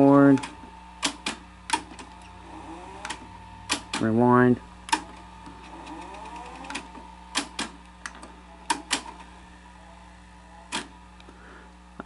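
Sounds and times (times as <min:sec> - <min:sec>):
mechanical clicks of tape machine: 0:00.0 - 0:04.1, 0:04.8 - 0:09.3, 0:10.7 - 0:11.0
low steady hum: 0:00.0 - 0:12.0.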